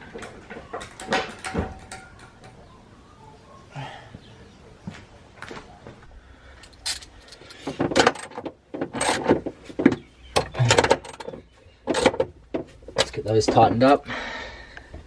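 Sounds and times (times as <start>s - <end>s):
metallic clicks and clanks of tools: 0.1s - 2.6s, 6.6s - 13.7s.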